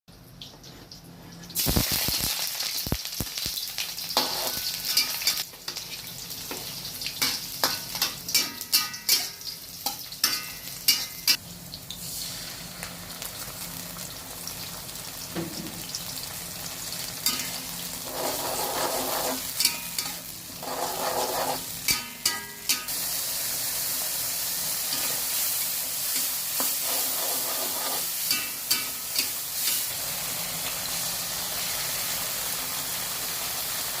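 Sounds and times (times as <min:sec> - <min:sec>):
food sizzling in a hot pan: 0:01.6 - 0:34.0
spatula scraping a pan: 0:18.0 - 0:21.9, 0:26.6 - 0:29.3.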